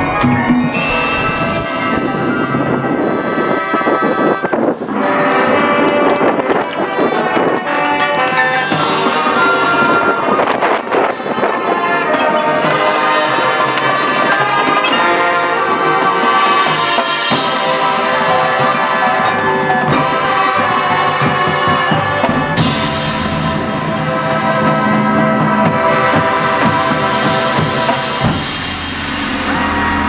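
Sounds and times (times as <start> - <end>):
marching band playing: 0.0 - 30.0
cymbal crashes: 0.1 - 2.8, 16.5 - 18.9, 26.7 - 30.0.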